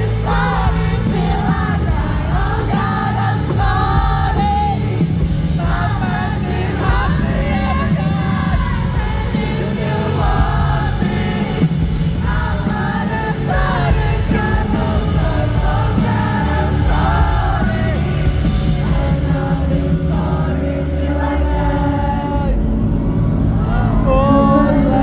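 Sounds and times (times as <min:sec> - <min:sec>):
live band playing: 0:00.0 - 0:25.0
person singing: 0:23.6 - 0:25.0.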